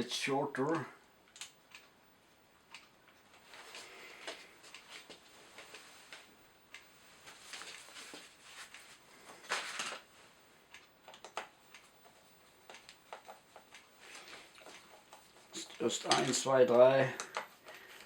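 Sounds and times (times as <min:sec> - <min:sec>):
light clicks and taps of parts: 0:10.7 - 0:18.0.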